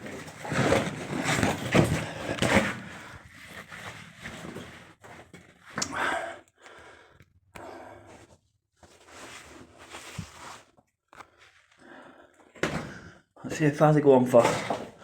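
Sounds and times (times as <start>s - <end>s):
man breathing and sighing: 5.8s - 8.4s.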